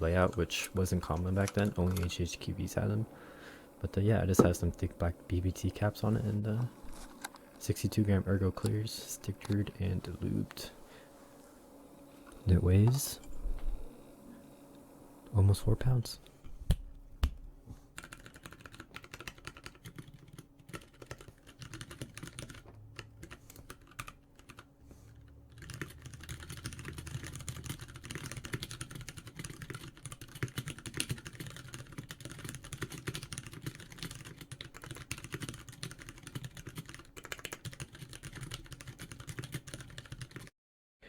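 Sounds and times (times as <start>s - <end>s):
mechanical keyboard typing: 18.0s - 24.7s, 25.5s - 40.5s.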